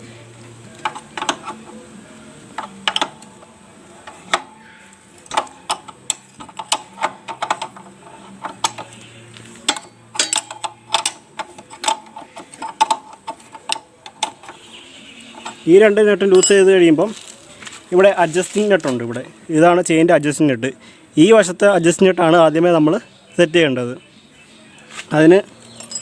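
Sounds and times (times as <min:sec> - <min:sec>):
spanner clicking on metal nut: 0:00.7 - 0:01.8, 0:02.6 - 0:04.5, 0:05.2 - 0:09.0, 0:09.6 - 0:15.7.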